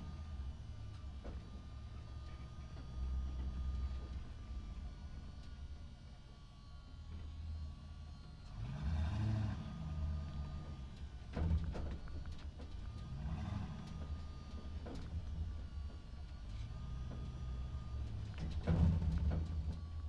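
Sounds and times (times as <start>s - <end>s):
truck engine running: 7.2s - 20.0s.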